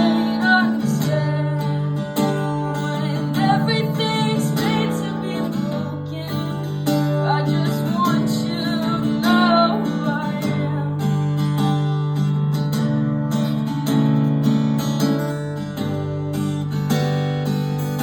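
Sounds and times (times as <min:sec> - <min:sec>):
person singing: 0:00.0 - 0:11.3
acoustic guitar strumming chords: 0:00.0 - 0:18.0.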